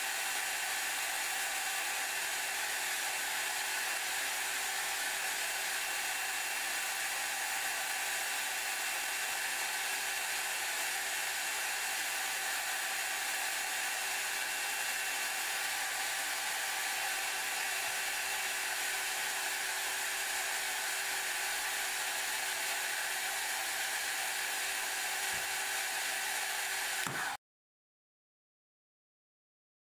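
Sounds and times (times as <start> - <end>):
hair dryer blowing: 0.0 - 27.4.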